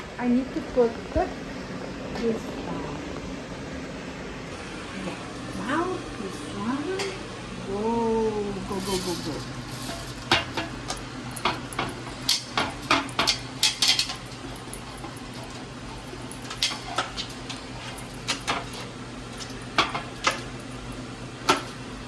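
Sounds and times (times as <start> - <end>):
steady low hum: 0.0 - 22.0
pots and utensils clinking: 4.8 - 7.3, 8.2 - 22.0.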